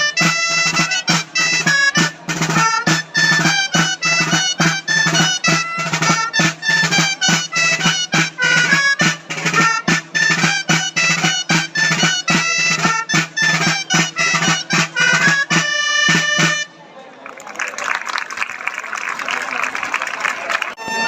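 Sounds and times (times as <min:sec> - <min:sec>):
drum steady beat: 0:00.0 - 0:16.7
reedy wind instrument melody: 0:00.0 - 0:16.9, 0:20.7 - 0:21.0.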